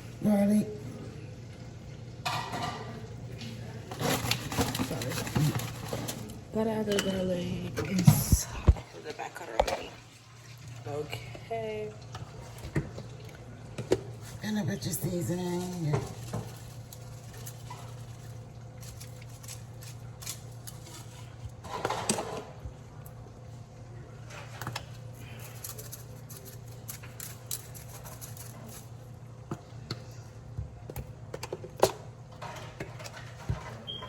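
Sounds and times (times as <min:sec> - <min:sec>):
utensils and dishes clattering: 0:02.2 - 0:03.1, 0:03.9 - 0:10.0, 0:13.8 - 0:22.6, 0:24.3 - 0:29.0, 0:31.4 - 0:34.0.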